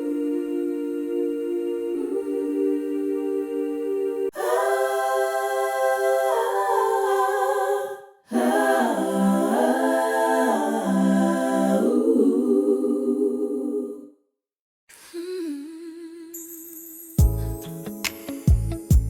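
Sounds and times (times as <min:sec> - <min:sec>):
wordless vocals on held notes: 0:00.0 - 0:14.1.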